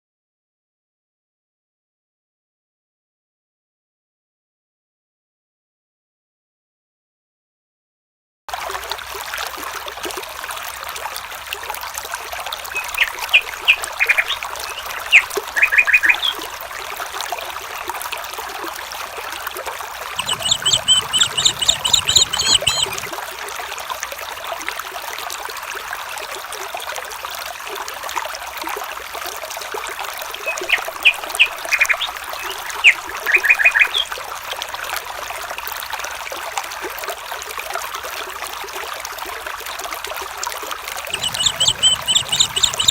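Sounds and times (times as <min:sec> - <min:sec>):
water trickling: 0:08.5 - 0:42.9
bird chirps: 0:12.7 - 0:16.4, 0:20.2 - 0:23.1, 0:30.4 - 0:34.0, 0:41.2 - 0:42.9
rapid high bird trill: 0:12.7 - 0:16.4, 0:20.2 - 0:23.2, 0:30.5 - 0:34.0, 0:41.2 - 0:42.9.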